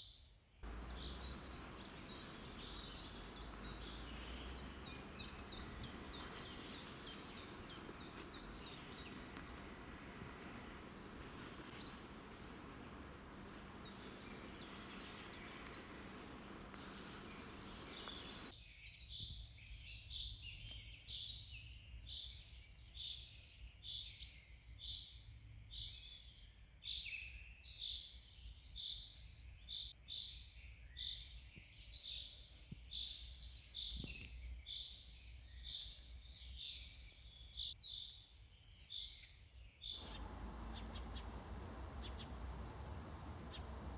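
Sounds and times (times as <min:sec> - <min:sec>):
background hiss: 0:00.6 - 0:18.5, 0:40.0 - 0:43.9
birds singing and chirping: 0:00.6 - 0:18.5, 0:40.0 - 0:43.9.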